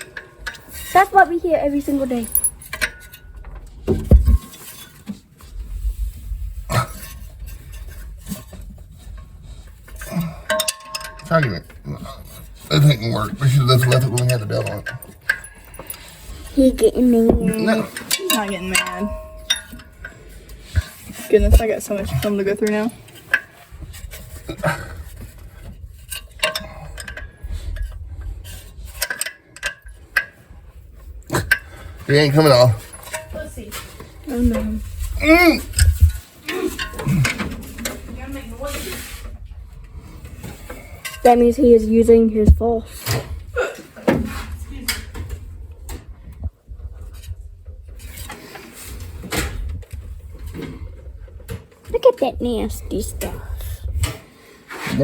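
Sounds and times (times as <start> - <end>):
wrenches clinking on bolts: 1.8 - 3.4, 9.9 - 16.5, 17.5 - 21.3, 26.0 - 30.4
hand tools knocking on metal: 10.5 - 11.7.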